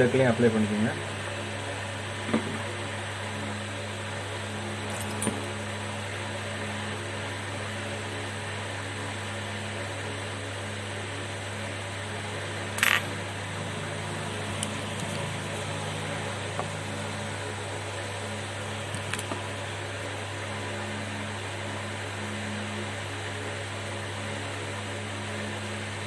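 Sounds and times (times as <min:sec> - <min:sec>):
steady equipment hum: 0:00.0 - 0:07.2, 0:11.1 - 0:22.2.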